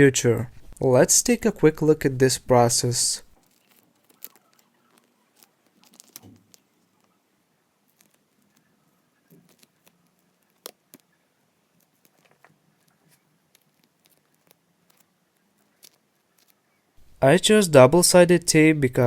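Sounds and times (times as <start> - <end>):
tape and cable clicks and rustles: 3.3 - 7.2, 7.8 - 16.6.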